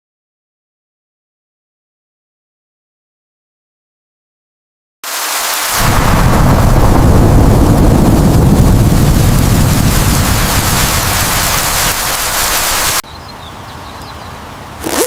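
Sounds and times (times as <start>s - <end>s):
loud steady rushing noise: 5.1s - 13.0s.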